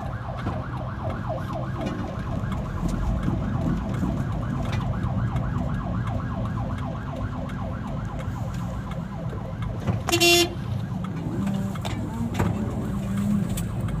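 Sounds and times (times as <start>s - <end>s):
traffic and engine noise: 0.0s - 14.0s
yelping siren: 0.0s - 14.0s
vehicle horn blast: 10.1s - 10.6s.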